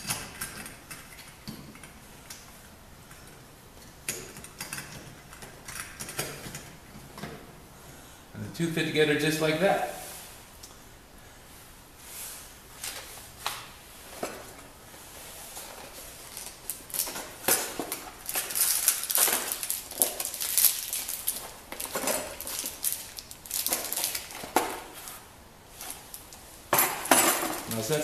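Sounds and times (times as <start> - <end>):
door lock parts clicking and rattling: 4.0 - 7.3, 16.3 - 24.8.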